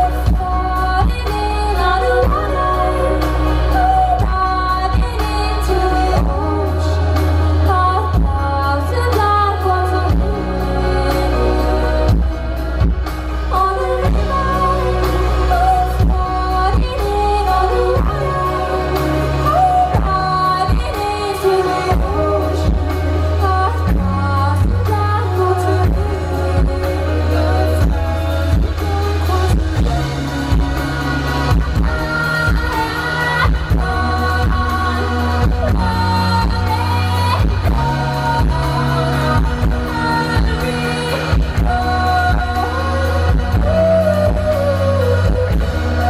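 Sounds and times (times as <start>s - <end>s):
heavy bass: 0.0s - 46.0s
live pop concert music: 0.0s - 46.0s
woman singing: 0.0s - 46.0s.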